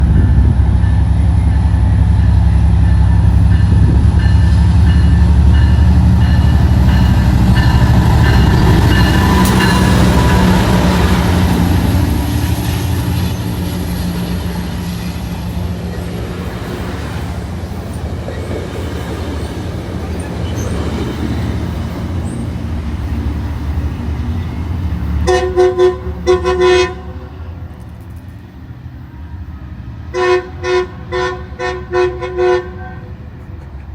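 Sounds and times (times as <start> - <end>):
train rumbling past: 0.0 - 33.9
crossing bell dinging: 0.1 - 22.6
train horn toots: 25.2 - 27.3, 30.1 - 33.2.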